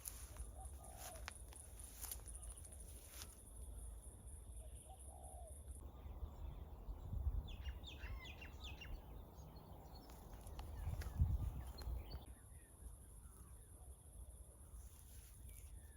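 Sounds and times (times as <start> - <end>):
bird chirping: 4.6 - 14.3
low steady rumble: 5.8 - 12.2.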